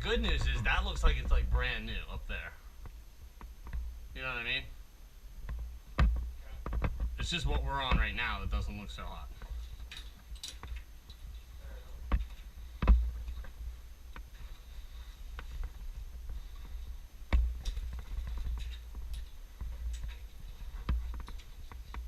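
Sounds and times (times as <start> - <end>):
steady low rumble: 0.0 - 22.0
footsteps on wooden ladder: 5.5 - 22.0.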